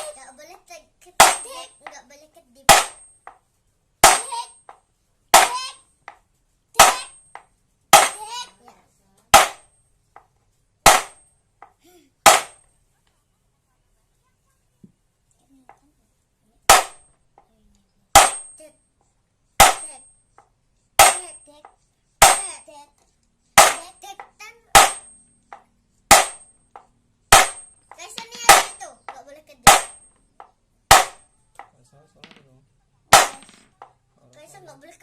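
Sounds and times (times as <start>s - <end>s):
hammer striking metal gear: 24.7s - 28.8s.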